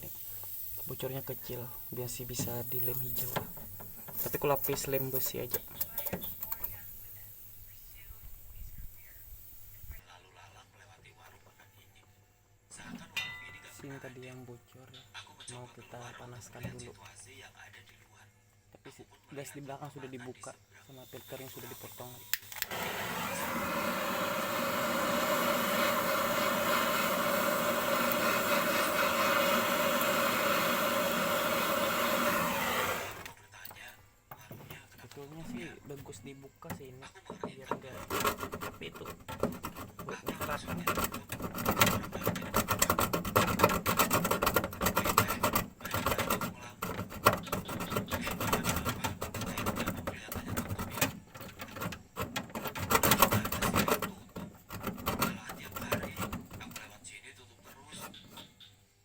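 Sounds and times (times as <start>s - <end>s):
gas torch flame hissing: 0.0s - 10.0s, 20.9s - 33.4s.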